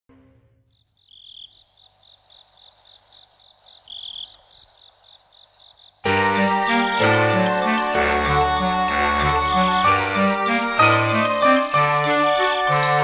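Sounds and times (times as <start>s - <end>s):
crickets chirping: 0.6s - 6.2s
loud band music: 6.1s - 13.0s.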